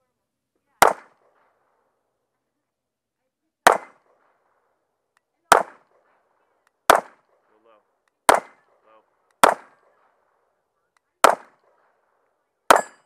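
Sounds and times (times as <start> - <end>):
gunshots with echo: 0.8 - 1.6, 3.6 - 4.5, 5.5 - 6.1, 6.8 - 7.6, 8.2 - 10.5, 11.2 - 13.0.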